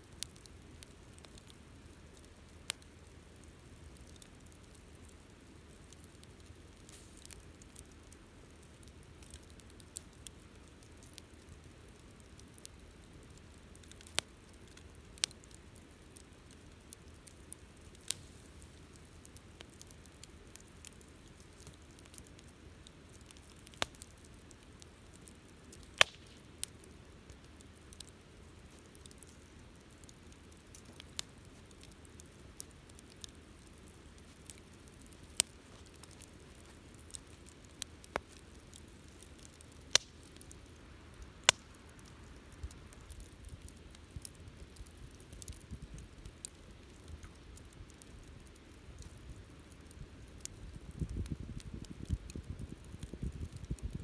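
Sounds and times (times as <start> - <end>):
campfire crackling: 0.0 - 54.0.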